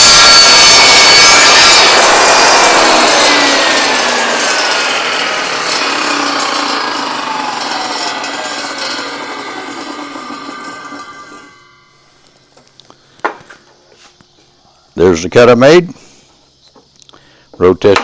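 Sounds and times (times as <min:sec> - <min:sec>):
table saw cutting wood: 0:00.0 - 0:12.0
saw blade winding down whine: 0:00.0 - 0:12.3.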